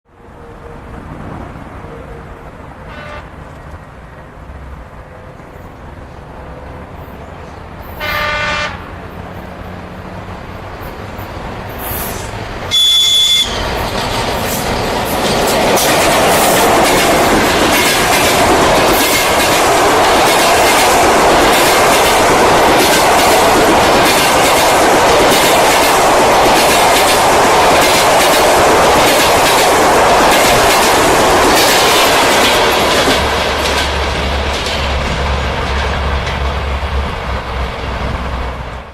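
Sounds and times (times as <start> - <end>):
train passing close by: 0.1 - 38.9
locomotive horn blast: 1.9 - 3.4, 8.0 - 8.9, 12.7 - 13.8
wheels clicking over rail joints: 12.6 - 38.9.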